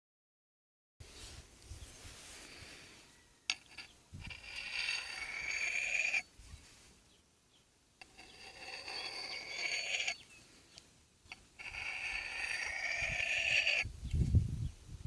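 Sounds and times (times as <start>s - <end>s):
knife scraping on sharpening steel: 3.5s - 6.3s, 8.0s - 10.4s, 11.3s - 13.9s.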